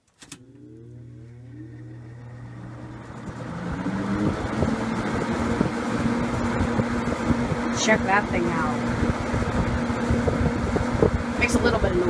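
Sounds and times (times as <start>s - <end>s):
electric fan motor spinning up: 0.2s - 12.0s
rush of air from fan: 3.2s - 12.0s.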